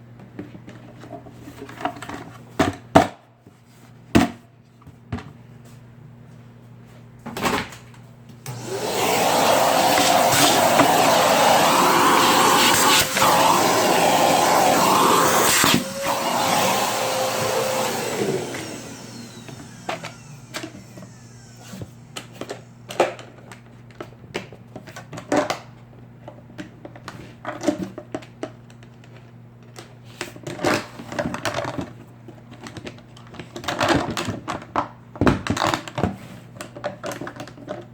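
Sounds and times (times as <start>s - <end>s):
appliance motor rushing: 8.5s - 23.0s.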